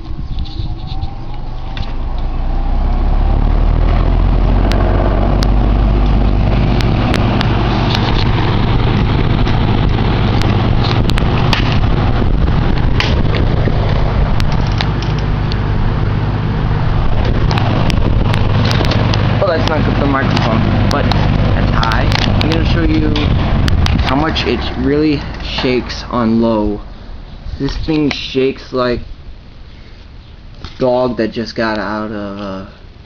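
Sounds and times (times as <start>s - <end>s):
air buffeting microphone: 0.0s - 33.0s
box fan humming: 0.0s - 33.0s
fan blades rattling clicks: 3.9s - 15.7s, 17.0s - 26.3s.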